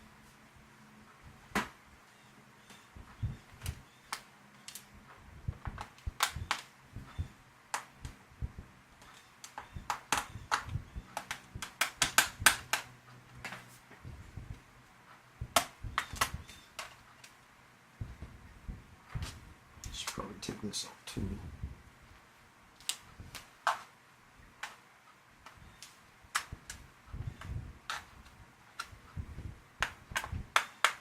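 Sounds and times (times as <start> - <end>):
clicks and taps of laptop parts: 5.6 - 8.2, 9.0 - 13.7, 29.8 - 31.0.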